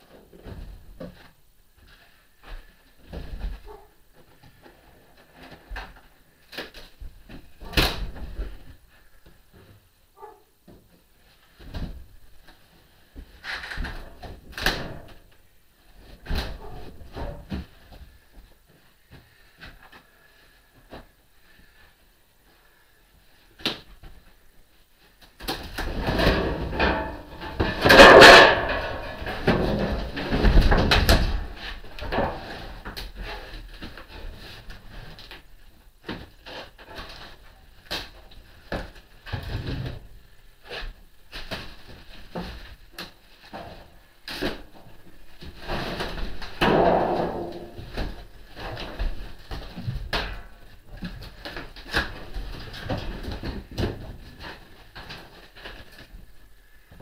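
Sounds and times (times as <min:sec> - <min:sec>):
wooden crate knocks and rattles: 0:25.5 - 0:33.0, 0:45.4 - 0:50.4
boards creaking and scraping: 0:25.5 - 0:57.0.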